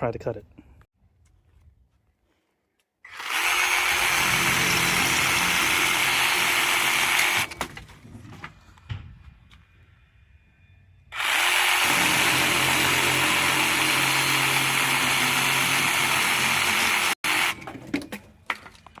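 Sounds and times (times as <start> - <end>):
power tool cutting wood: 3.1 - 7.5, 11.1 - 17.6.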